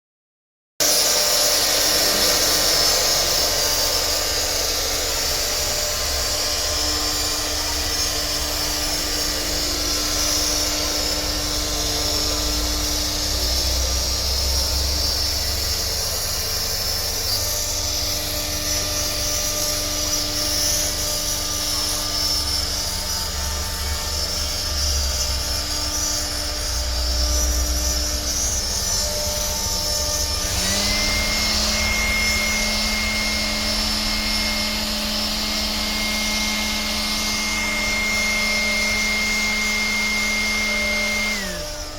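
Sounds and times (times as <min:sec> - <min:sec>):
cnc machine whirring and hissing: 0:00.8 - 0:41.9
rising machine tone: 0:22.3 - 0:41.9.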